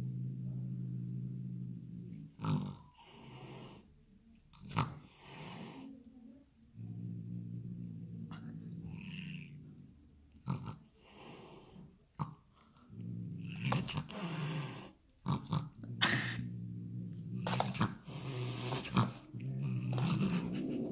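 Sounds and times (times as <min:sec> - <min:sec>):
cat making breathy noises: 0:16.0 - 0:16.5, 0:19.9 - 0:20.9.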